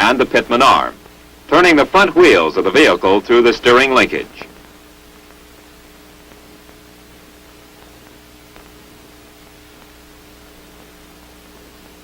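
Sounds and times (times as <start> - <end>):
film soundtrack hiss and hum: 0.0 - 12.0
faint ticks: 6.2 - 6.8.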